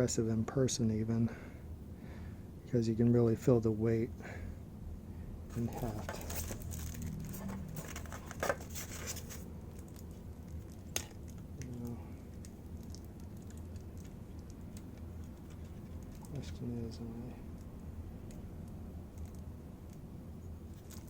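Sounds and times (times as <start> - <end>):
steady low hum: 0.0 - 21.0
rustling and scratching: 5.5 - 17.7, 20.6 - 21.0.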